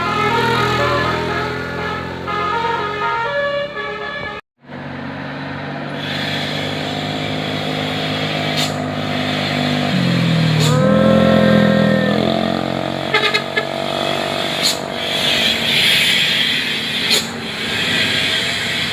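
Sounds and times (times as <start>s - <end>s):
musical bus air horn: 0.0s - 4.4s, 10.6s - 18.1s
bus engine running: 0.0s - 18.9s.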